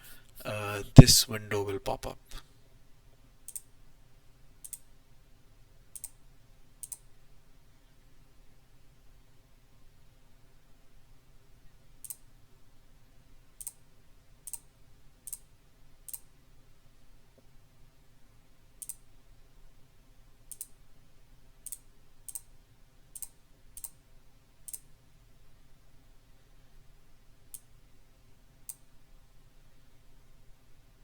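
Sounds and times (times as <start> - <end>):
computer mouse clicking: 3.5 - 3.7, 4.6 - 4.9, 6.0 - 6.2, 6.8 - 7.1, 18.8 - 19.0, 20.5 - 20.8, 23.2 - 24.0.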